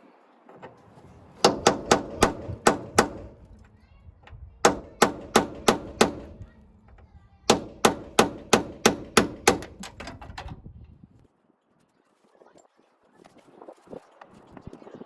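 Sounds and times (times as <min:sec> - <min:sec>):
hammer striking metal: 0:01.4 - 0:03.5, 0:04.6 - 0:06.6, 0:07.5 - 0:10.0.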